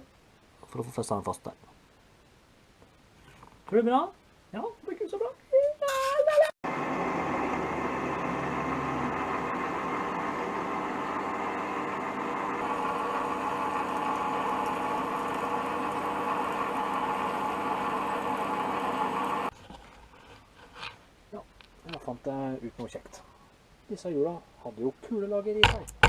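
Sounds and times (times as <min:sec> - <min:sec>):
power tool motor whine: 0:06.7 - 0:19.5.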